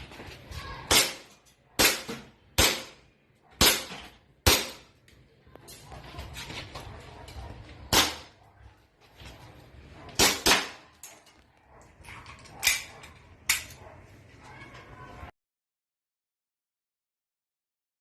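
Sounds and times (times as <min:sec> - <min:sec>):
airsoft pistol shots: 0:00.9 - 0:03.0, 0:03.6 - 0:04.9, 0:07.9 - 0:08.3, 0:10.2 - 0:10.8.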